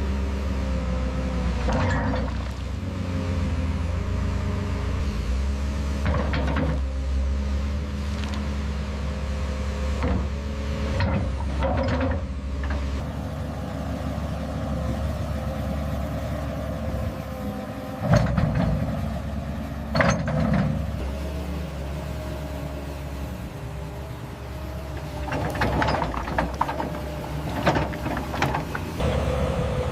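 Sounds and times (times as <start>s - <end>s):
heavy machine engine running: 0.0s - 29.9s.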